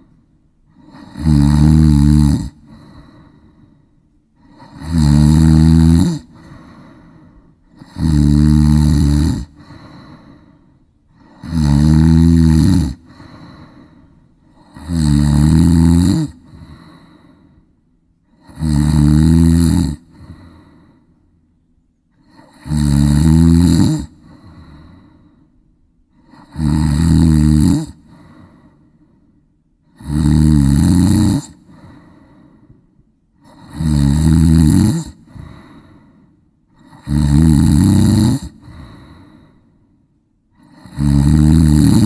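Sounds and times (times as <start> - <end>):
breathy breaths: 0.0 - 1.8, 2.4 - 15.1, 16.2 - 18.9, 19.9 - 22.7, 24.0 - 26.6, 27.8 - 30.0, 31.4 - 33.9, 35.0 - 37.1, 38.3 - 41.0
loud snoring: 0.7 - 3.5, 4.4 - 17.4, 18.3 - 20.8, 22.2 - 25.1, 26.2 - 28.6, 29.8 - 32.5, 33.4 - 36.0, 36.7 - 39.5, 40.6 - 42.0.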